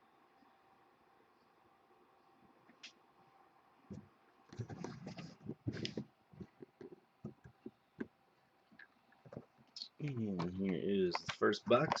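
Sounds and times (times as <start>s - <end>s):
handling knocks clicks and rustles: 3.9s - 8.2s, 9.2s - 12.0s.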